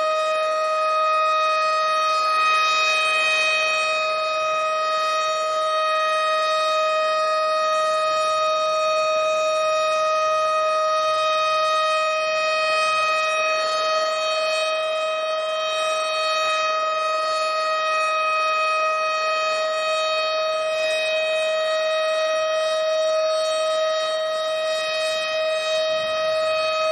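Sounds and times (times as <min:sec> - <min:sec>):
warning siren steady pitch: 0:00.0 - 0:26.9.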